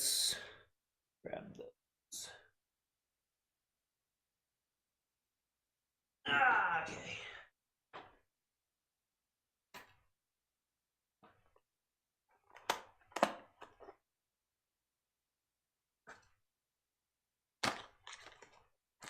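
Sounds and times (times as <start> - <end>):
clicks of cables and parts handled: 17.6 - 18.7.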